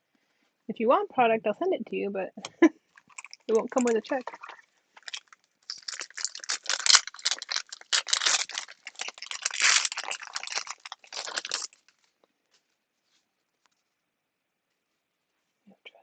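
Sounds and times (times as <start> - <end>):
cards and wrapper rustling: 2.9 - 12.1.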